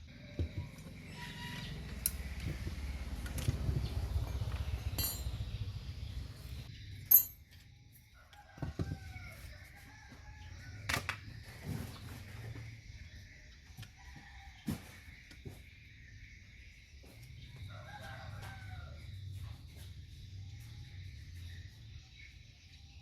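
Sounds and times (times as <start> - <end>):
metal tools clinking: 1.8 - 2.6, 4.2 - 5.6, 7.0 - 7.7.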